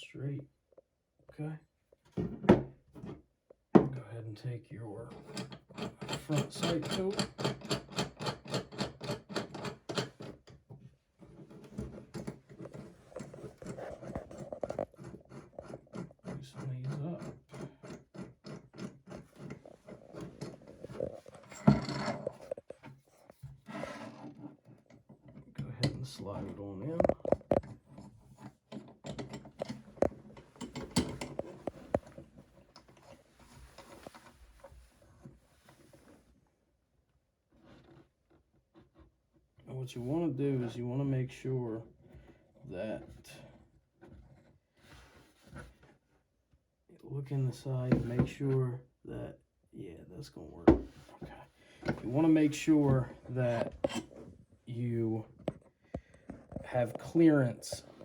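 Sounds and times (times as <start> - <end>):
handling noise: 28.8 - 36.0.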